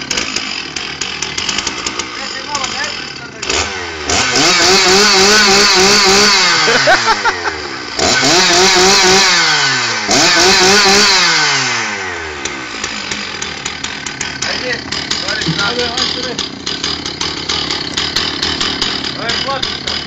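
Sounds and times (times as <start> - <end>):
chainsaw engine revving: 0.0 - 20.0.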